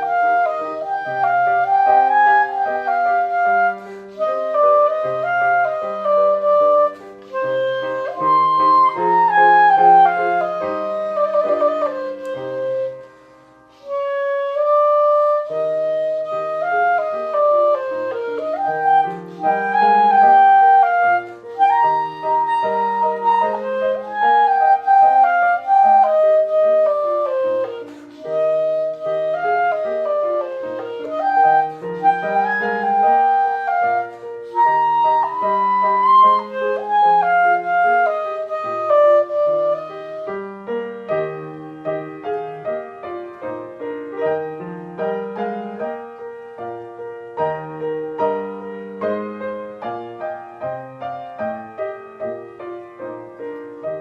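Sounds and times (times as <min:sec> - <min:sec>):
clarinet playing melody: 0:00.0 - 0:54.0
piano accompaniment: 0:00.0 - 0:54.0.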